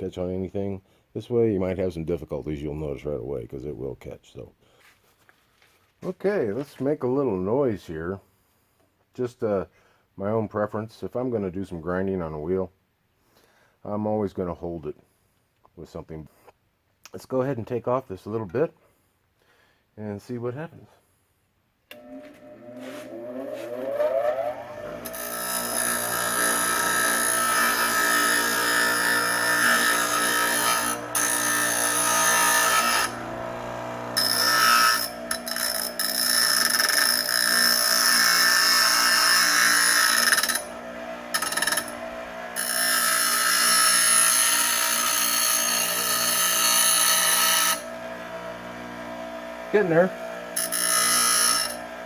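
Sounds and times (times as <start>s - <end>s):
grinding wheel motor hum: 21.9s - 52.0s
metal hissing on grinding wheel: 39.8s - 47.9s.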